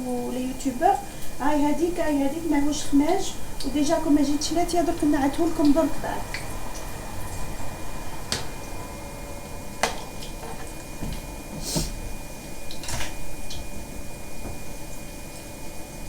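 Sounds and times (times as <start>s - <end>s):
faint hum: 0.0s - 16.0s
kitchen utensils clinking: 8.2s - 11.9s.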